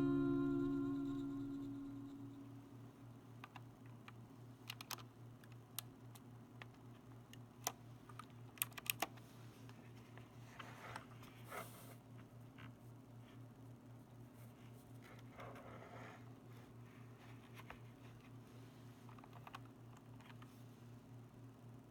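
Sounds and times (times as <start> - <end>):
low hum: 0.0 - 2.5
mechanical keyboard key clicks: 4.7 - 5.6, 7.6 - 9.1.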